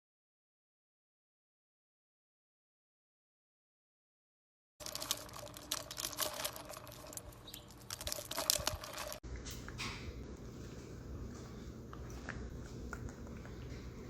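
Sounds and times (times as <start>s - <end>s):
dog eating with crunches: 4.8s - 9.8s.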